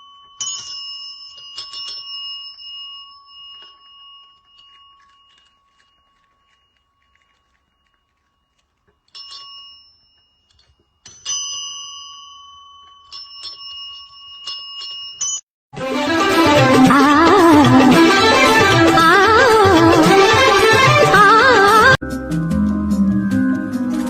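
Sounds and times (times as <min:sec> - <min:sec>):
small metal bell ringing: 0:00.0 - 0:15.5.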